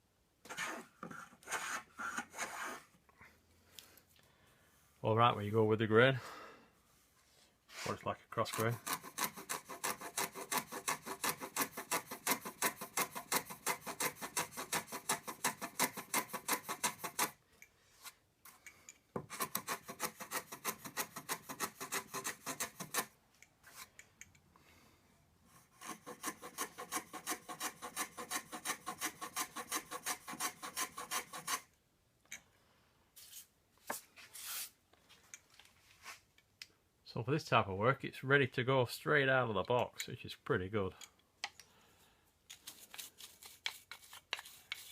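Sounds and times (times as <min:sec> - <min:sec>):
hand plane shaving wood: 0:07.8 - 0:17.4, 0:19.3 - 0:23.1, 0:25.5 - 0:31.7, 0:42.8 - 0:44.9.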